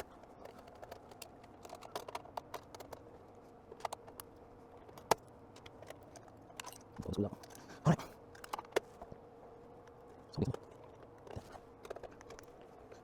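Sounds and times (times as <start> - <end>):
small tools clicking and tapping: 0.0 - 3.0
faint steady hum: 0.0 - 13.0.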